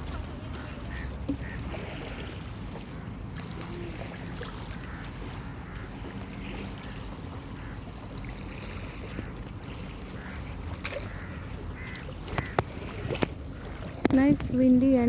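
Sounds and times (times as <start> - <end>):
faint waterfront background sounds: 0.0 - 15.0
wind buffeting microphone: 11.8 - 15.0.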